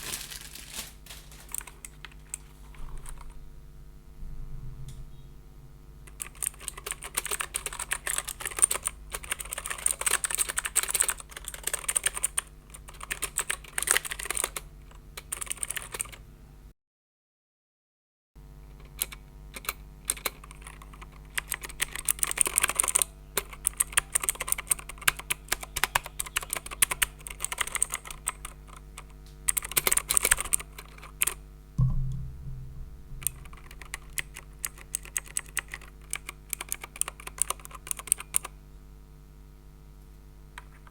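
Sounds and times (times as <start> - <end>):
low thump: 31.8 - 33.8.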